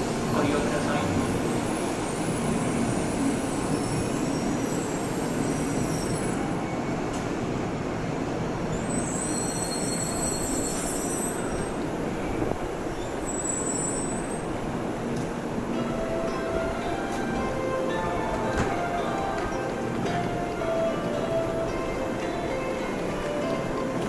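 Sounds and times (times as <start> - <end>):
train running and wheel noise: 0.0 - 24.0
high-pitched brake squeal: 3.8 - 6.9, 8.7 - 11.8, 12.9 - 14.5.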